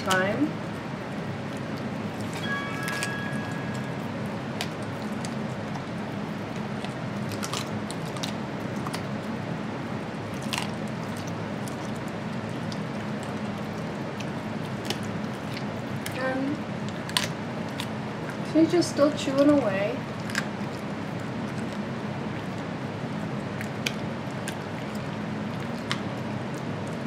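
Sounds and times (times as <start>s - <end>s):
puppy chewing with wet squishing: 0.0s - 27.0s
small bones crunching: 4.6s - 9.3s, 10.2s - 16.2s, 16.8s - 18.4s, 20.1s - 22.7s.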